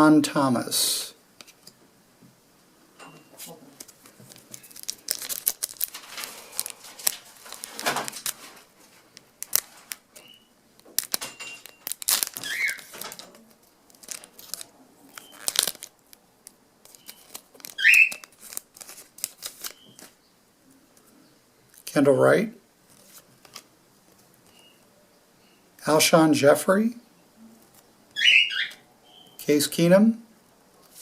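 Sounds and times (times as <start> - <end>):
wrapper squeaks: 3.4 - 16.2, 16.8 - 20.2
foil wrapper tearing and crinkling: 3.8 - 20.1.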